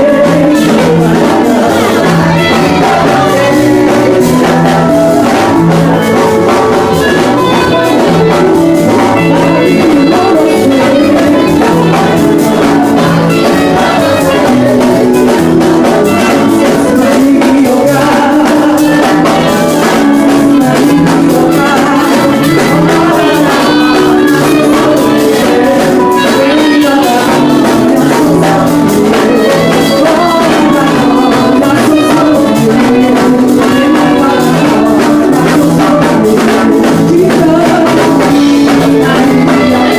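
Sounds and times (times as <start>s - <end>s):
beating percussion: 0.0s - 39.9s
worship singing with band: 0.0s - 39.9s.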